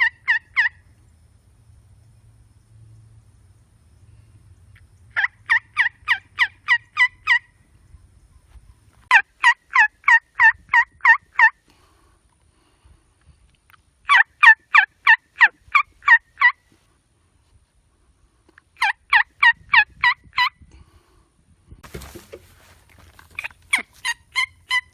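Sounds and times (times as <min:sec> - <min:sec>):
turkey yelping: 0:00.0 - 0:00.8, 0:05.2 - 0:07.4, 0:09.1 - 0:11.5, 0:14.1 - 0:16.5, 0:21.9 - 0:24.9.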